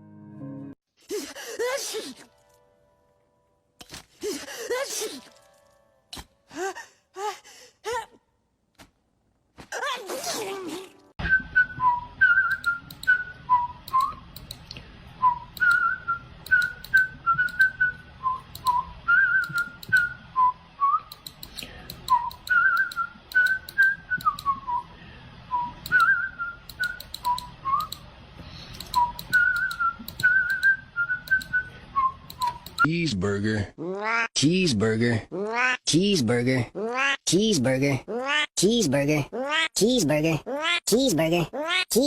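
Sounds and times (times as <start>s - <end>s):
person whistling a tune: 11.2s - 14.2s, 15.2s - 21.2s, 22.1s - 24.9s, 25.5s - 28.0s, 28.8s - 32.9s
sharp clicks: 12.5s - 13.2s, 13.8s - 14.8s, 16.4s - 17.7s, 18.5s - 18.8s, 21.1s - 24.6s, 25.8s - 28.0s, 28.7s - 31.5s, 32.2s - 32.9s.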